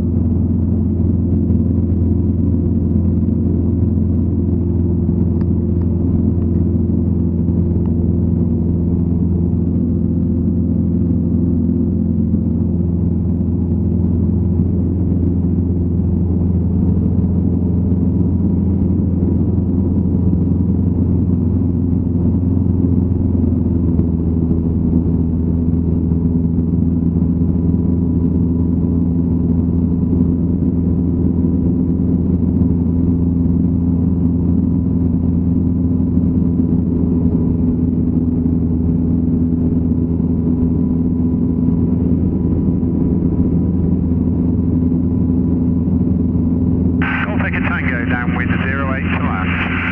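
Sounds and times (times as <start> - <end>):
aircraft engine droning: 47.0 - 49.9.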